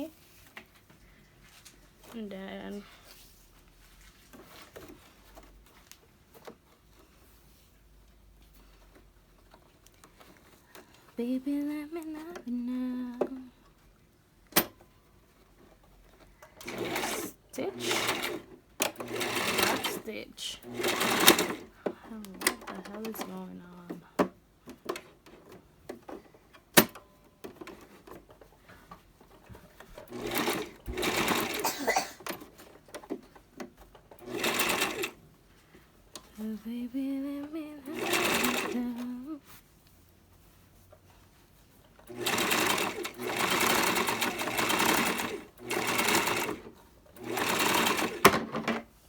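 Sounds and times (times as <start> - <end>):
clicks and knocks handling machine: 16.1 - 31.6, 46.2 - 48.9.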